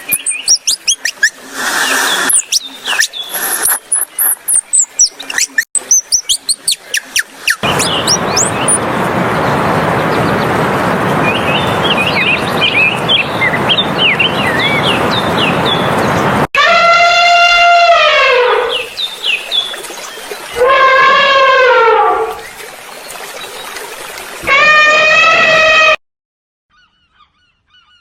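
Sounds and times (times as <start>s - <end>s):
small birds twittering: 0.0s - 8.8s, 11.2s - 16.3s
birds chirping: 0.0s - 10.6s, 11.2s - 16.4s
steady rushing noise: 7.4s - 16.5s.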